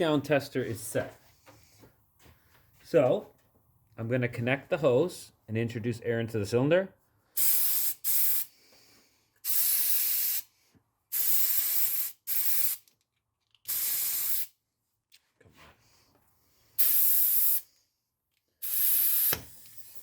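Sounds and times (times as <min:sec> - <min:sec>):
compressed air hissing: 0:07.4 - 0:12.8, 0:13.7 - 0:14.5, 0:16.8 - 0:17.7, 0:18.6 - 0:20.0.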